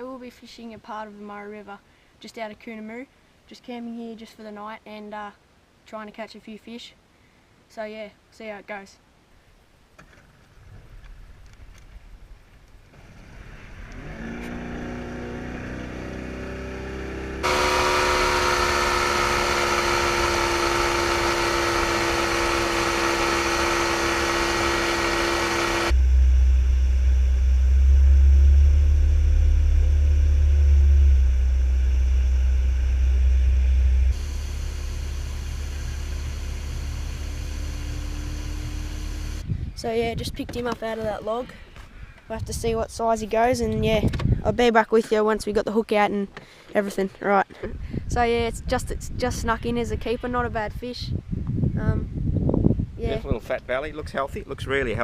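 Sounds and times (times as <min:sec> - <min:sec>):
engine running: 0:12.7 - 0:39.4.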